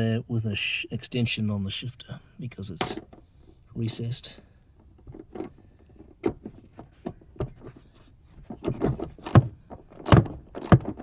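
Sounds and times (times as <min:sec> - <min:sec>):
sharp metallic clicks and knocks: 0:02.8 - 0:03.6, 0:08.4 - 0:11.0.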